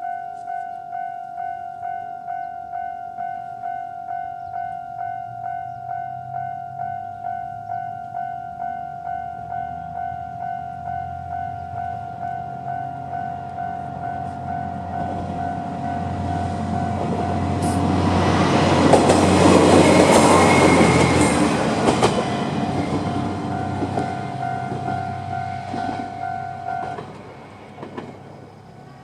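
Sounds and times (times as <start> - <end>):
crossing alarm bell ringing: 0.0 - 29.0
diesel railcar engine and wheels: 0.0 - 29.0
train wheels clicking: 16.1 - 28.4.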